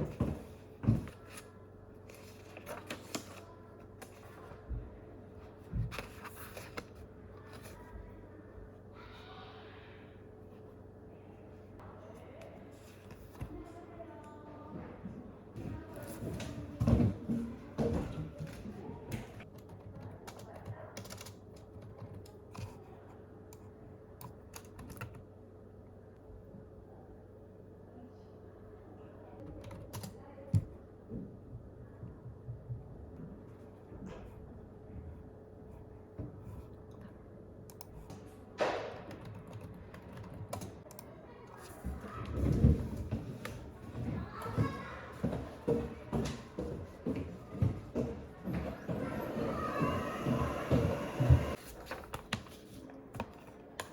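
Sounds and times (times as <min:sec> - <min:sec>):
typing on a keyboard: 0:19.5 - 0:22.7.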